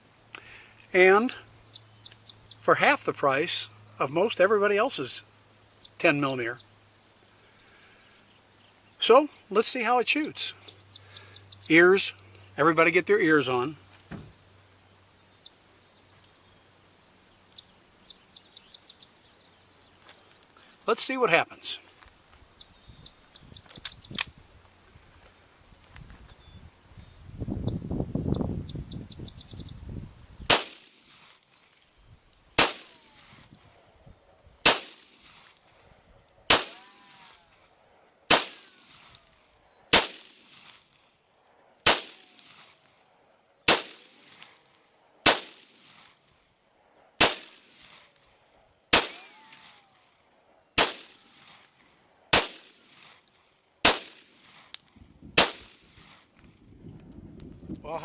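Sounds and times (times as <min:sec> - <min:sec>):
pistol shots: 0:30.5 - 0:30.9, 0:32.6 - 0:33.0, 0:34.6 - 0:35.5, 0:36.5 - 0:36.8, 0:38.3 - 0:39.0, 0:39.9 - 0:40.5, 0:41.8 - 0:42.6, 0:43.7 - 0:44.4, 0:45.2 - 0:46.1, 0:47.2 - 0:48.0, 0:48.9 - 0:49.4, 0:50.8 - 0:51.6, 0:52.3 - 0:53.1, 0:53.8 - 0:54.5, 0:55.4 - 0:56.0.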